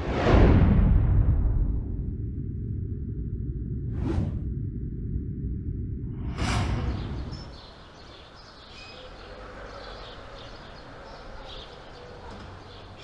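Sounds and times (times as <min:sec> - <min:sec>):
whoosh: 0:03.9 - 0:04.7
outdoor background noise: 0:04.7 - 0:13.0
birds chirping: 0:06.6 - 0:13.0.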